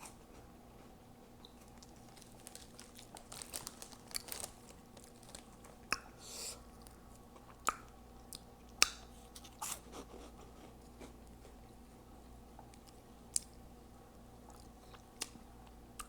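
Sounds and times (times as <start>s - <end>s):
crunchy chewing: 0.0s - 11.6s.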